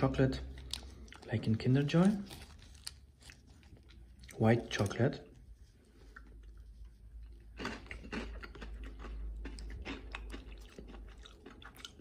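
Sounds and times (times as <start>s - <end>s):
person crunching chocolate: 0.4s - 5.0s, 7.2s - 12.0s.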